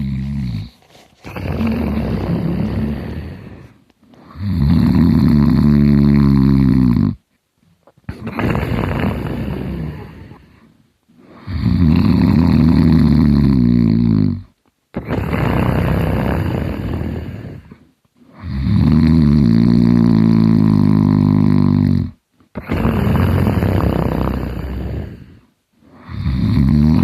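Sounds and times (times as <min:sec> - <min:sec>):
soft breathy breath: 0:00.0 - 0:04.5, 0:08.1 - 0:11.6, 0:16.6 - 0:18.5, 0:24.3 - 0:26.2
person snoring heavily: 0:00.0 - 0:07.2, 0:08.1 - 0:27.0.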